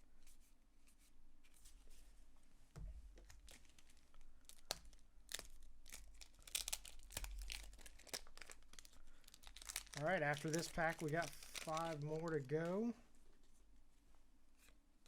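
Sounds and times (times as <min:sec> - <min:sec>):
paper wrapper rustling and tearing: 0:03.4 - 0:12.7
cards being handled: 0:09.7 - 0:13.5.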